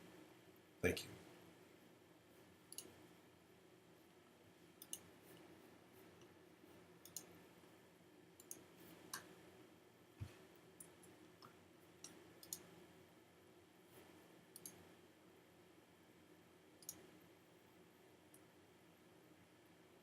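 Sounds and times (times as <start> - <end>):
faint steady hum: 0.0 - 20.0
computer mouse clicking: 2.7 - 3.0, 4.8 - 5.5, 7.0 - 7.4, 8.4 - 9.3, 10.8 - 12.7, 14.5 - 14.9, 16.8 - 17.1.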